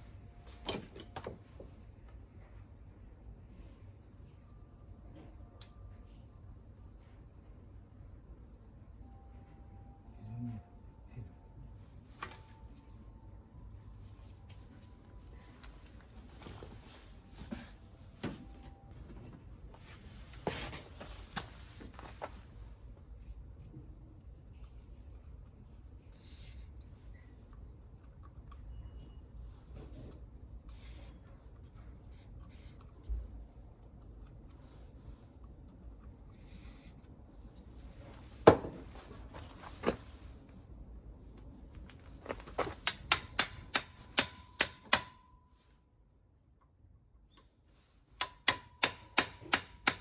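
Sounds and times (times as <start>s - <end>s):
sharp metallic clack: 42.6s - 45.4s, 48.2s - 50.0s.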